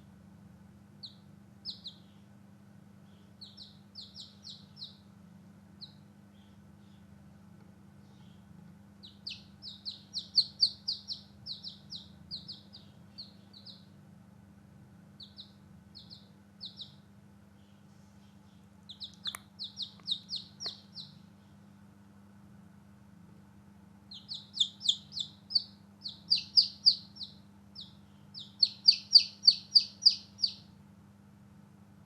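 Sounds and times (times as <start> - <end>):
chicks peeping: 1.0 - 2.3, 3.0 - 5.2, 5.8 - 7.2, 8.0 - 14.0, 15.1 - 21.6, 24.1 - 30.7.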